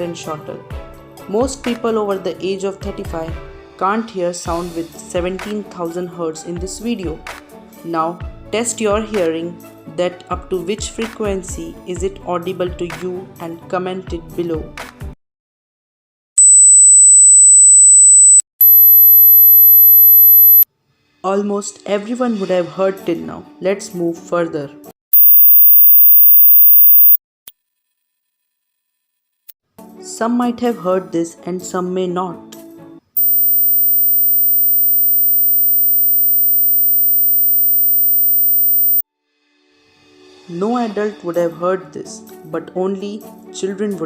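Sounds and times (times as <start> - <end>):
high-pitched test tones: 16.4 - 20.6, 25.1 - 27.2, 33.2 - 39.0.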